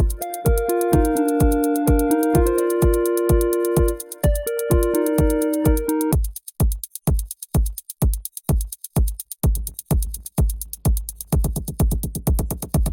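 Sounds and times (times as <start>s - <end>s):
synth melody: 0.0s - 6.2s
hi-hat ticks: 0.0s - 12.9s
kick drum: 0.0s - 12.9s.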